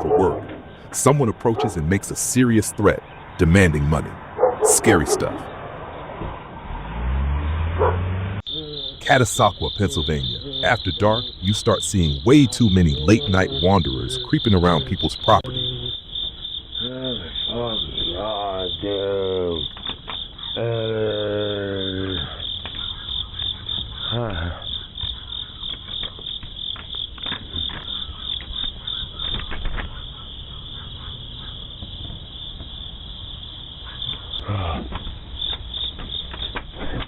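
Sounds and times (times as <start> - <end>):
night insects chirping: 0.0 - 37.0.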